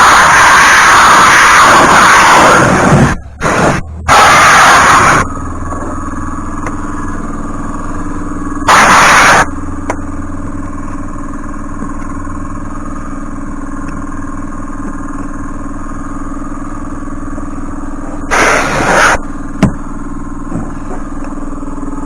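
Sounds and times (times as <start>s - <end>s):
short loud hiss: 18.3s - 19.2s.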